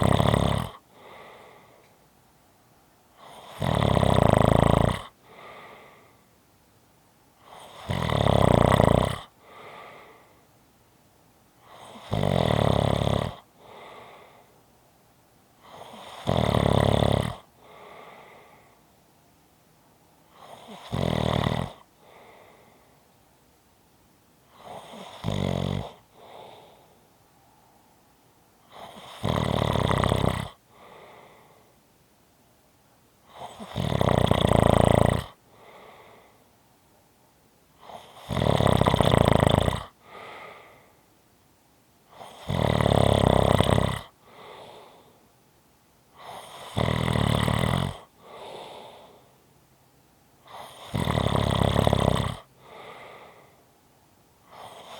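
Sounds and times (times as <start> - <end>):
person snoring: 0.0 - 1.8, 3.2 - 6.2, 7.4 - 10.4, 11.6 - 14.5, 15.6 - 18.8, 20.3 - 22.9, 24.5 - 26.9, 28.6 - 31.7, 33.3 - 36.4, 37.8 - 40.9, 42.1 - 45.2, 46.2 - 49.3, 50.4 - 53.6, 54.5 - 54.9.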